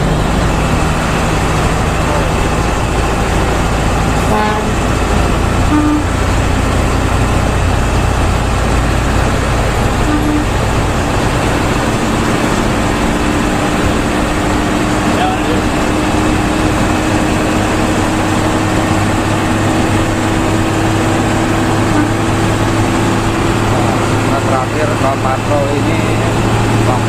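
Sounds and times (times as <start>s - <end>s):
bus engine and road rumble: 0.0s - 27.0s
bus horn toots: 4.0s - 7.1s, 9.7s - 11.2s, 19.5s - 22.7s.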